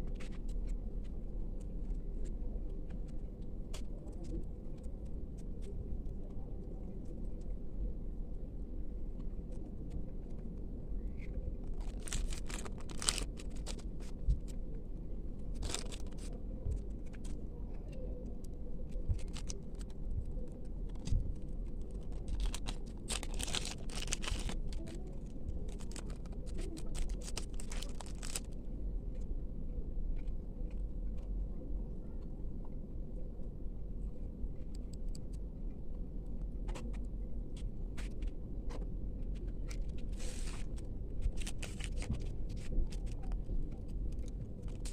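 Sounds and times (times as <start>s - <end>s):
steady low hum: 0.0s - 44.9s
packaging crinkling and tearing: 11.6s - 14.5s, 15.5s - 16.3s, 19.1s - 28.6s, 40.1s - 43.3s, 44.1s - 44.9s.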